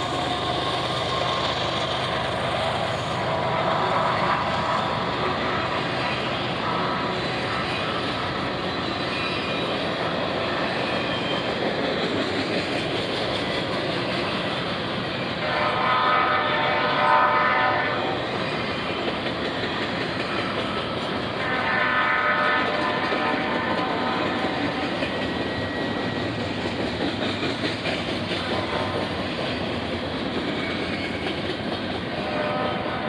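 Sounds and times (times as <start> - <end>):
freight train rumbling by: 0.0 - 33.0
locomotive air horn: 6.4 - 7.6, 15.4 - 18.3, 21.3 - 24.9, 28.5 - 29.2, 32.2 - 33.0.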